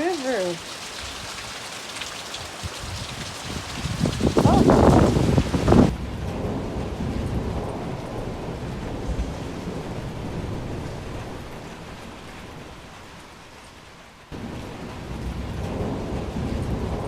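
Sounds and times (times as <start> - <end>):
rushing floodwater: 0.0 - 6.1
heavy rain: 0.0 - 17.0.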